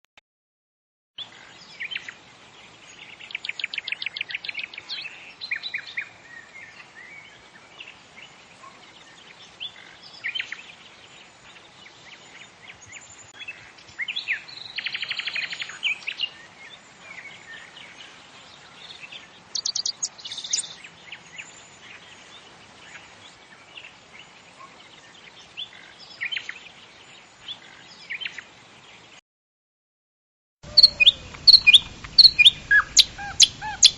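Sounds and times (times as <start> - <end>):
faint background hiss: 1.2 - 29.2, 30.6 - 33.9
songbirds chirping: 1.2 - 29.2, 30.6 - 33.9
bird trills: 19.6 - 20.8, 30.7 - 33.9.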